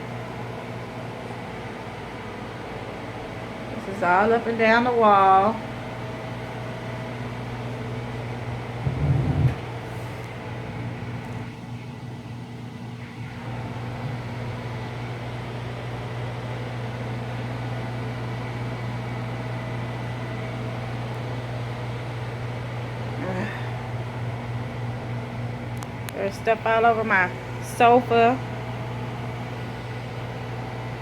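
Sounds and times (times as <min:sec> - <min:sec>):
machine humming: 0:07.1 - 0:18.0.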